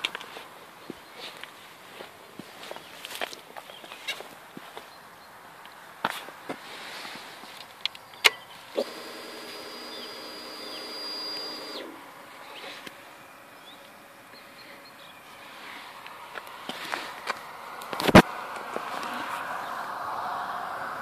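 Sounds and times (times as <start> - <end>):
faint bird chirps: 8.0 - 12.8
electric motor whine: 8.8 - 12.0.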